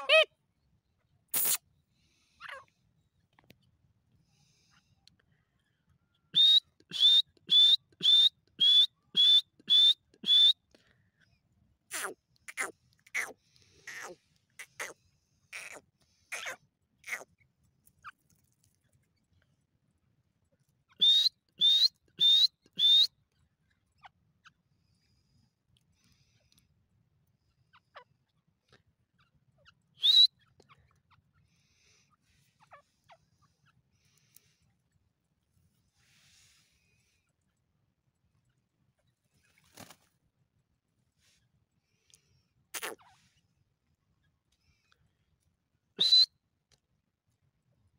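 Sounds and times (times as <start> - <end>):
faint short chirps: 1.3 - 1.6
francolin whistled calls: 6.4 - 10.6, 20.9 - 23.1, 30.0 - 30.4, 46.0 - 46.3.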